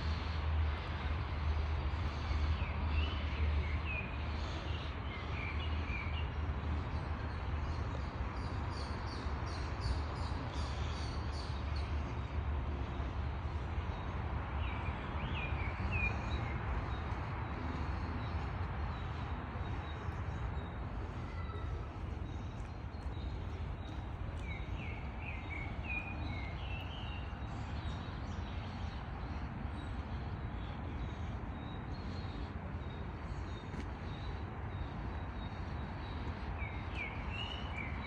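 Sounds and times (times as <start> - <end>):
low outdoor rumble: 10.2 - 37.7.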